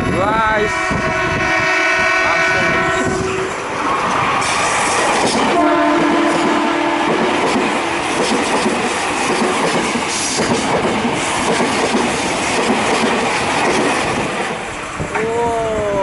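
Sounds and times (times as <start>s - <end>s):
train horn blast: 0.0s - 3.6s, 5.5s - 7.9s
electric train passing: 0.0s - 16.0s
train wheels clattering over joints: 3.5s - 15.3s.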